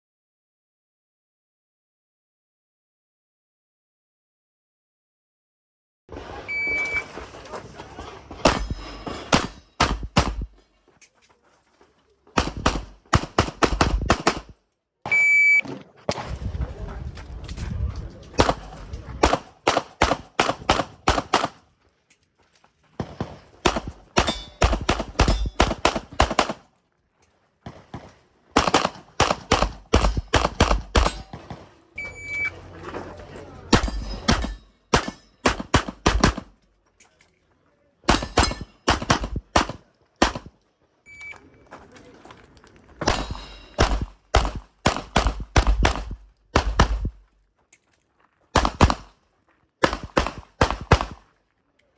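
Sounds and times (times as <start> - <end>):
short high electronic beep: 6.5 - 7.1, 32.0 - 32.6
pistol shots: 8.4 - 10.6, 12.4 - 15.2, 18.4 - 21.6, 23.0 - 26.7, 27.6 - 31.7, 33.7 - 36.6, 38.1 - 40.6, 43.0 - 47.2, 48.6 - 49.2, 49.8 - 51.3.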